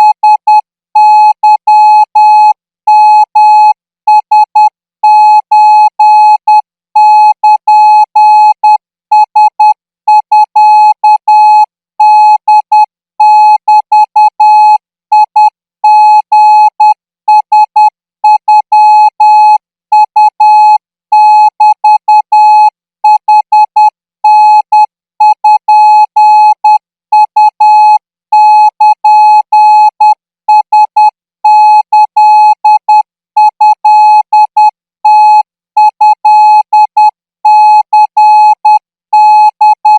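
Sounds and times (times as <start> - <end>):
morse code beeps: 34.3 - 36.1.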